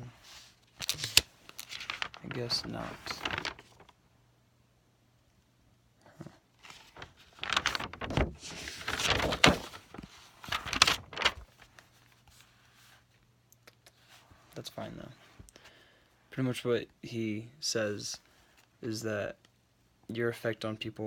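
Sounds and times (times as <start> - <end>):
rustling and scraping: 6.1 - 13.1.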